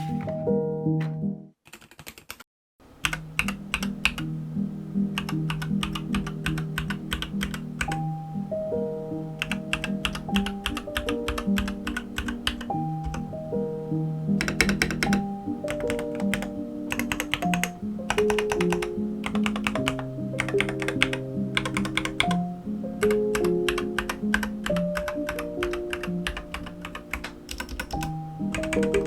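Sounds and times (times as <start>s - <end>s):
background music: 0.0s - 1.5s, 3.1s - 29.0s
mechanical keyboard typing: 1.7s - 2.4s, 3.0s - 4.2s, 5.2s - 8.0s, 9.4s - 13.2s, 14.4s - 22.4s, 23.0s - 29.0s.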